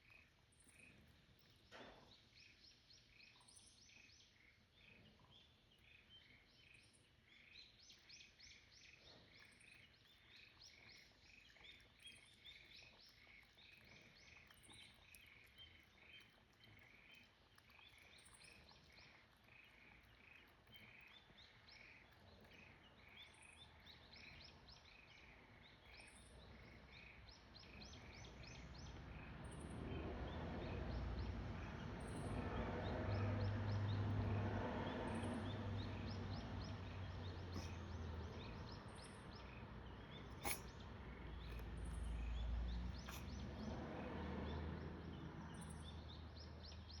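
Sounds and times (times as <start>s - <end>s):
birds chirping: 35.1s - 43.7s.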